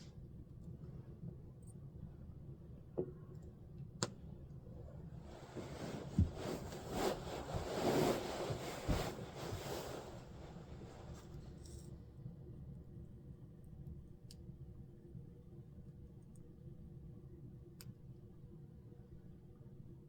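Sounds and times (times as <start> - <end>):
rustling handling noise: 5.2 - 11.8
soft thumps: 5.3 - 11.2.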